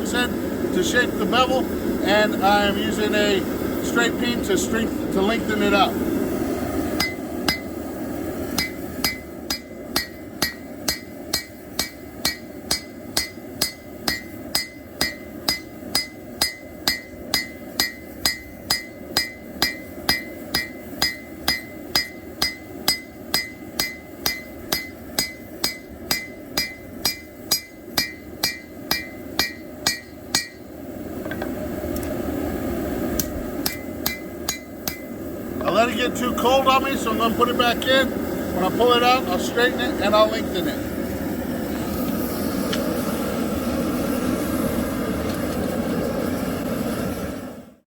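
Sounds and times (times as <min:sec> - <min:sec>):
hammer striking steel on anvil: 0:07.0 - 0:07.8, 0:08.5 - 0:30.7, 0:33.2 - 0:35.3.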